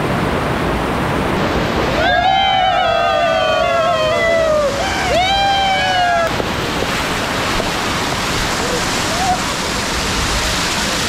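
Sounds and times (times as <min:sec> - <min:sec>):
waterfall rushing: 0:00.0 - 0:11.0
people yelling together: 0:01.9 - 0:06.4.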